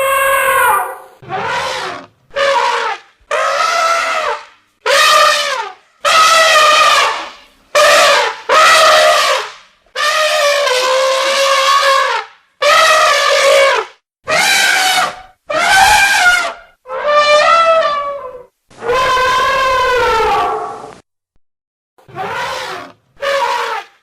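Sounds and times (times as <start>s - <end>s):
elephants trumpeting: 0.0s - 20.9s, 22.1s - 24.0s.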